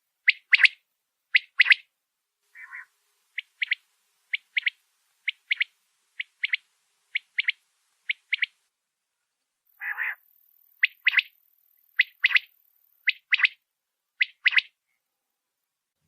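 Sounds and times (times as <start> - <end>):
quail calling: 0.3 - 1.9, 2.5 - 8.6, 9.7 - 10.2, 10.8 - 11.3, 11.9 - 13.6, 14.2 - 14.7.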